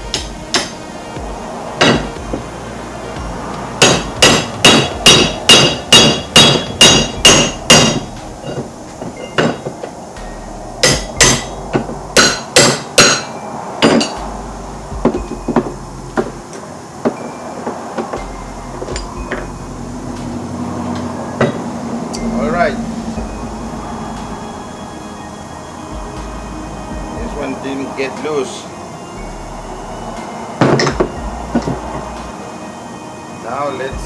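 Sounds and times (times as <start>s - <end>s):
hammer striking steel: 0.0s - 0.9s, 1.8s - 2.4s, 3.8s - 24.6s, 30.2s - 32.3s.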